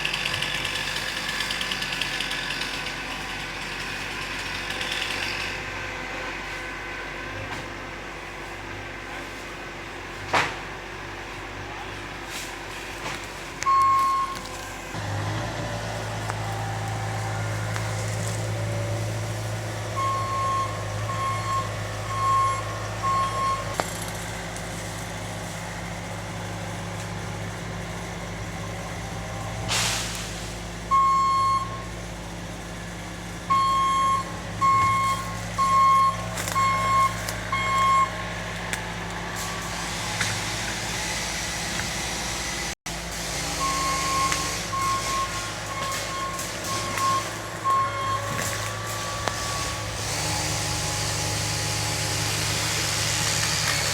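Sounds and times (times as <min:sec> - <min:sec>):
diesel engine running: 0:00.0 - 0:53.9
reversing alarm beeping: 0:13.6 - 0:14.5, 0:19.9 - 0:23.8, 0:30.9 - 0:31.9, 0:33.5 - 0:38.3, 0:43.6 - 0:51.1
short air hiss: 0:29.7 - 0:30.5.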